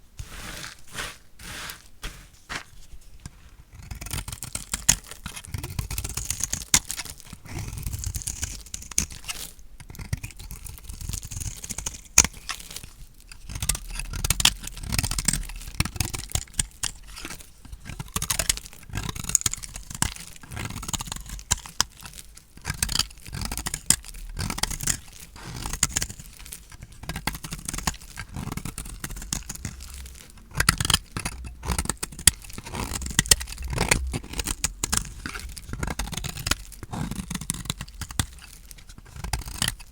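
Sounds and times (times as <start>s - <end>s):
blade cutting dry soap: 0.2s - 7.3s
soap crunching and crackling: 0.2s - 39.9s.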